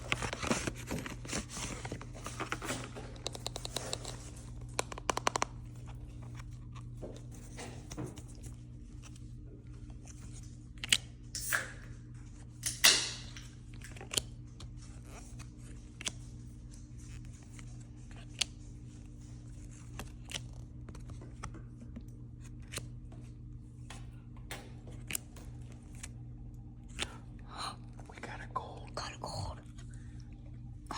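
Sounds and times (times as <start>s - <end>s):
steady low hum: 0.0s - 30.9s
cards and plastic tapping: 0.1s - 5.7s.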